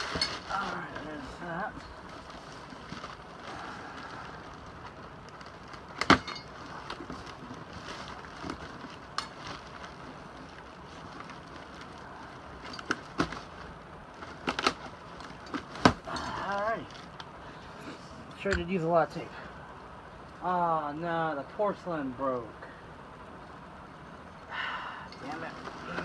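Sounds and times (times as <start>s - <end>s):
packing tape pulled away: 1.8s - 16.1s.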